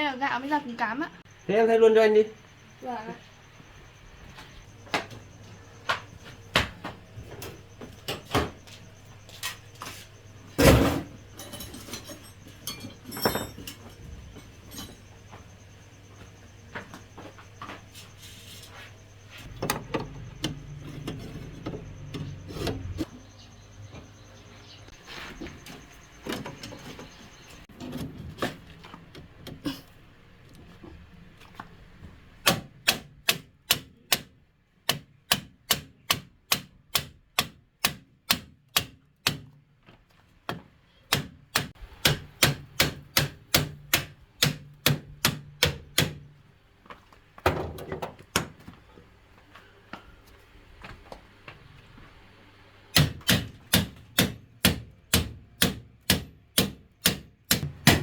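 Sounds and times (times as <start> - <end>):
hammer tapping: 53.0 - 58.0.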